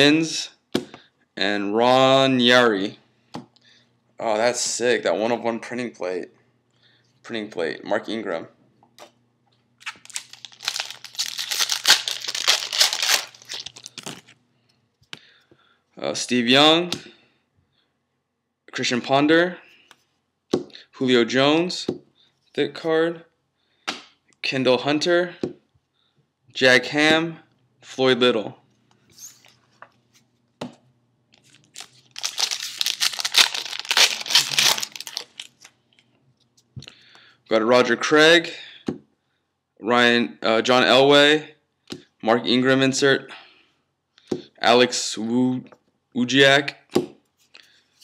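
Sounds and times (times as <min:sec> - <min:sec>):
foil wrapper crinkling and tearing: 0:09.8 - 0:14.3, 0:31.4 - 0:35.7.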